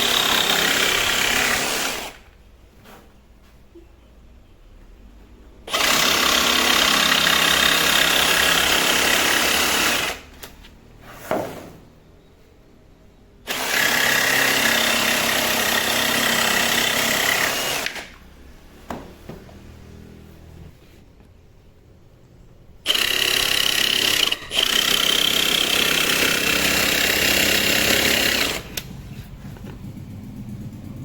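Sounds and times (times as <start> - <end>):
power tool running: 0.0 - 2.3, 5.7 - 10.3, 13.5 - 18.2, 22.8 - 29.0.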